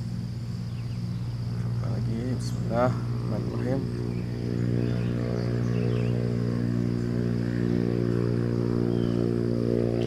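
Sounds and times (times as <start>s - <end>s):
small engine running: 0.0s - 10.0s.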